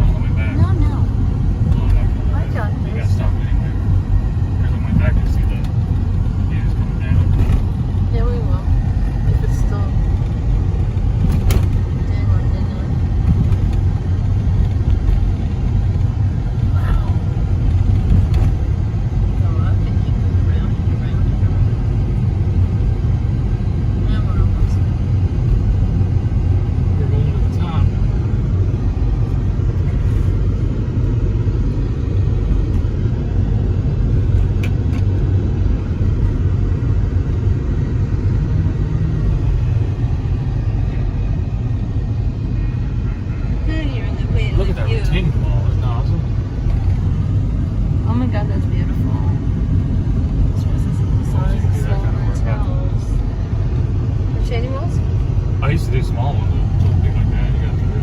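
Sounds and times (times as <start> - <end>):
vehicle road and engine rumble: 0.0 - 58.0.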